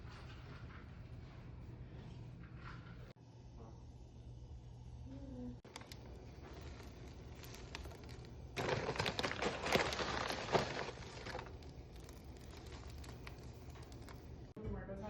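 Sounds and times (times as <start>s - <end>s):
faint steady background hum: 0.0s - 15.0s
rustling crinkling noise: 5.7s - 14.6s.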